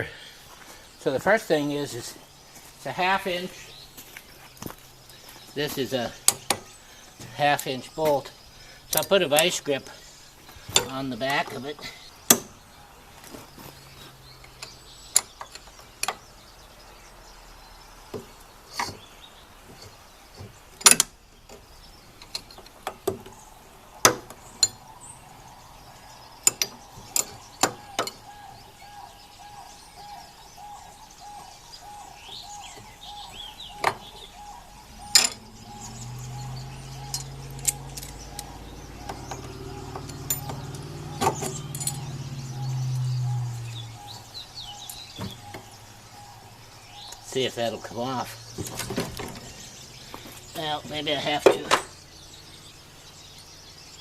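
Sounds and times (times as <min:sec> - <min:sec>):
low steady hum: 0:30.8 - 0:46.9.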